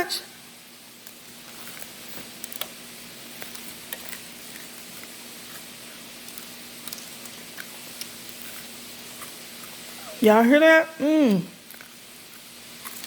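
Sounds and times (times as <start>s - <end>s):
chicken frying in hot oil: 0.0s - 10.1s.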